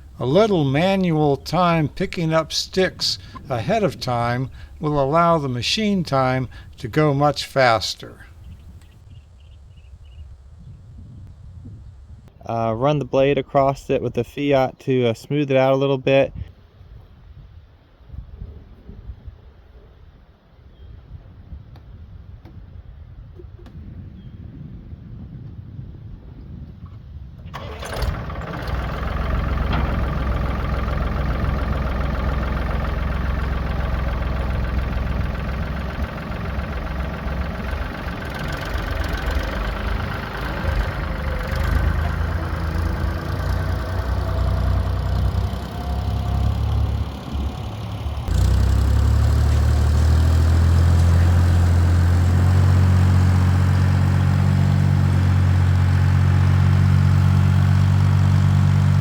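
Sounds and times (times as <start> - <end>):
grading blade dragging over dirt: 0.0 - 7.2, 27.6 - 59.0
tractor engine running: 0.0 - 9.1, 27.5 - 59.0.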